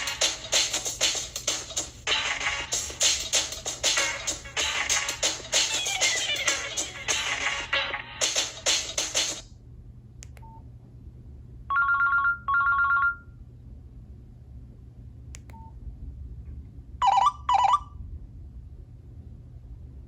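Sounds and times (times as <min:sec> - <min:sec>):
click: 0:10.2 - 0:10.5, 0:15.3 - 0:15.6
two-tone telephone ringtone: 0:11.7 - 0:13.2, 0:17.0 - 0:17.9.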